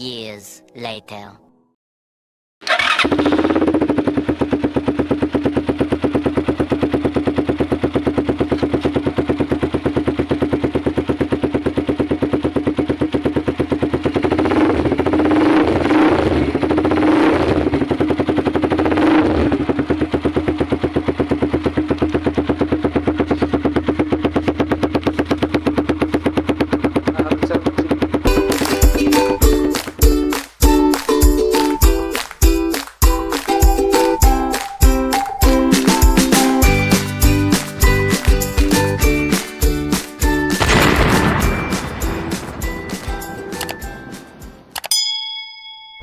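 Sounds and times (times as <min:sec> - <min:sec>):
motorcycle engine idling: 0:02.9 - 0:14.4, 0:19.5 - 0:29.3.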